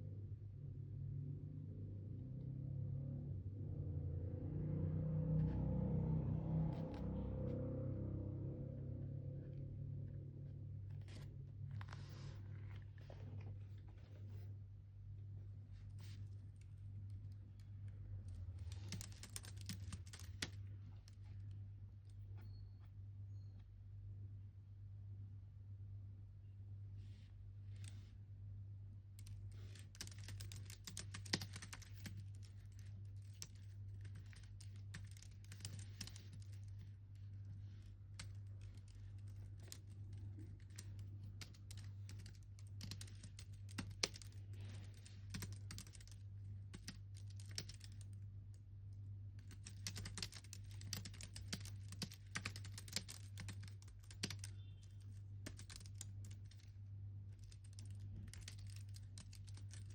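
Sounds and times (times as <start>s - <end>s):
low steady hum: 0.0s - 59.9s
typing on computer keyboard: 18.4s - 20.6s, 29.2s - 48.2s, 49.4s - 56.7s, 57.3s - 59.9s.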